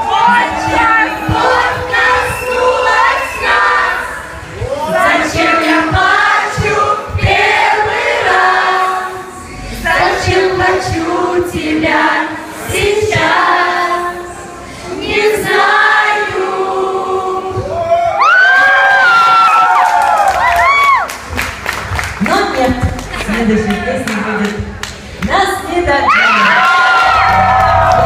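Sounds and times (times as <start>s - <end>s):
audience singing along: 0.0s - 17.9s.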